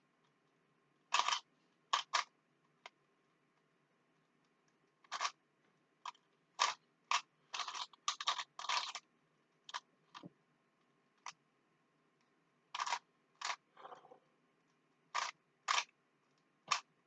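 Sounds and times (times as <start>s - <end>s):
puzzle cube plastic clicks: 1.1s - 3.0s, 4.7s - 5.4s, 6.0s - 10.3s, 12.7s - 13.7s, 15.1s - 16.9s.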